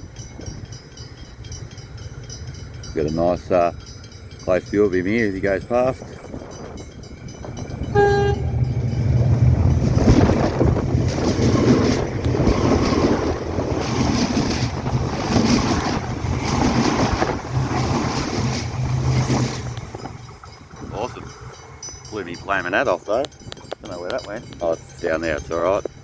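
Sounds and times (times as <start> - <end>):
train wheels rumbling on rails: 0.0 - 26.0
train horn toot: 7.8 - 8.8.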